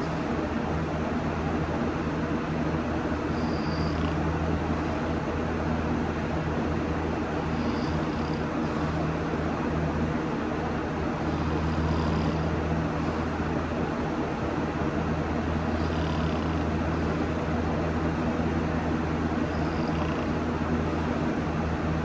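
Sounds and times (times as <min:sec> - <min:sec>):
steady low hum: 0:00.0 - 0:22.0
person snoring: 0:03.3 - 0:05.3, 0:07.4 - 0:09.4, 0:11.2 - 0:13.6, 0:15.7 - 0:17.6, 0:19.3 - 0:21.5.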